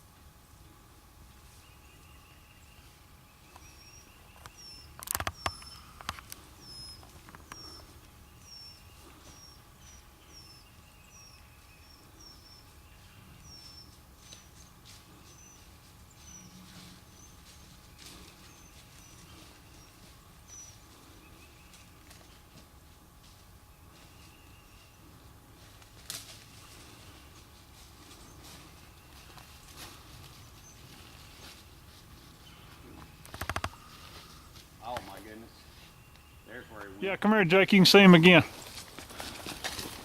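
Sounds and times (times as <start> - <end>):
small bird chirping: 1.6 - 17.4
footsteps in dry leaves: 12.9 - 33.2, 38.5 - 40.0.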